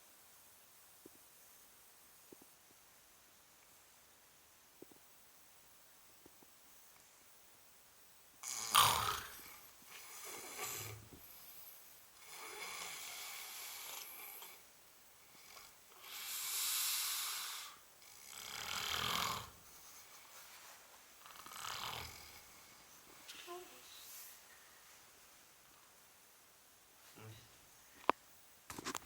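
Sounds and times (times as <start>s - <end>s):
person snoring heavily: 8.4s - 11.1s, 12.2s - 14.6s, 15.4s - 19.6s, 21.2s - 22.5s.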